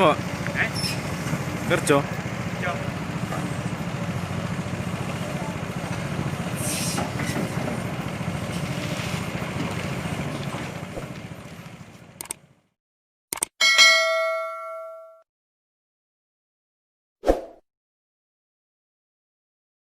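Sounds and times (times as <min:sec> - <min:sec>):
excavator diesel engine running: 0:00.0 - 0:12.7
sharp clicks: 0:12.2 - 0:12.4, 0:13.3 - 0:13.5
ringing metallic clang: 0:13.6 - 0:15.2.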